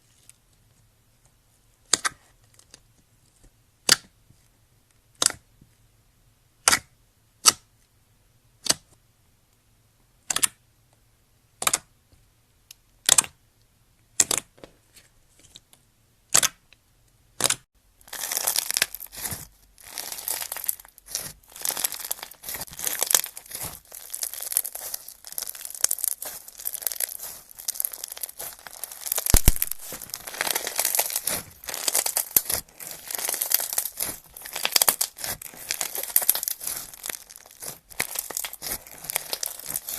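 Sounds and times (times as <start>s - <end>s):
slime crackling and crinkling: 18.0s - 39.9s
crisp snipping: 18.1s - 39.9s.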